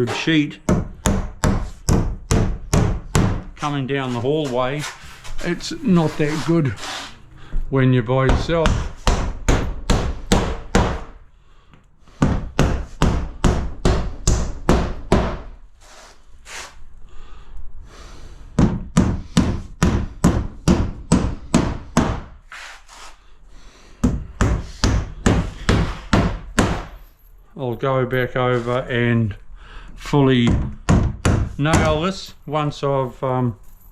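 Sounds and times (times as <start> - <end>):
hammer driving nails: 0.0 - 3.7, 8.3 - 11.2, 12.2 - 15.5, 18.6 - 22.4, 24.0 - 27.0, 30.4 - 32.1.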